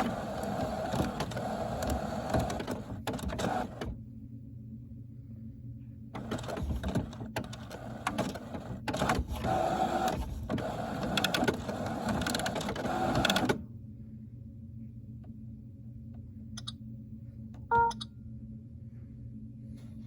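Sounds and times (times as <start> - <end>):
printer mechanism whirring and clicking: 0.0 - 4.0, 6.2 - 13.6
low steady hum: 0.0 - 9.0, 13.5 - 20.0.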